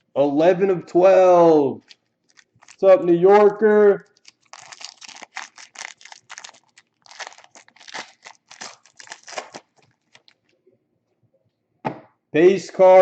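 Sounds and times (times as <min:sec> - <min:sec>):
packaging crinkling: 0:01.8 - 0:10.6.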